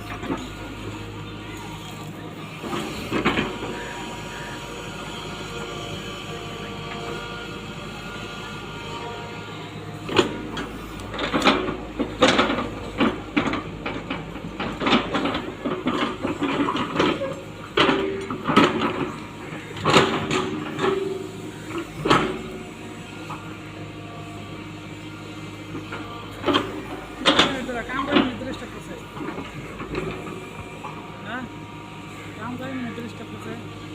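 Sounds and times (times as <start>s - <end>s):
excavator diesel engine running: 0.0s - 33.9s.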